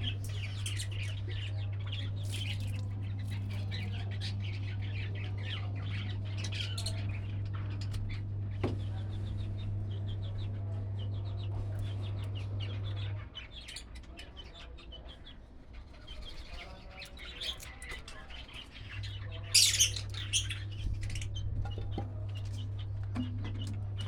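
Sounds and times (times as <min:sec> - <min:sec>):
small parrots chirping: 0:18.8 - 0:21.3.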